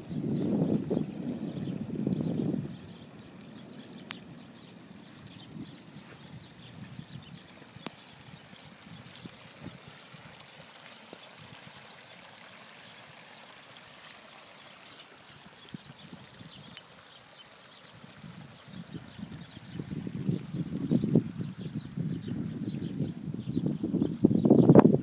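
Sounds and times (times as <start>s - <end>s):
steady rain: 0.0s - 23.3s
trickling running water: 0.0s - 25.0s.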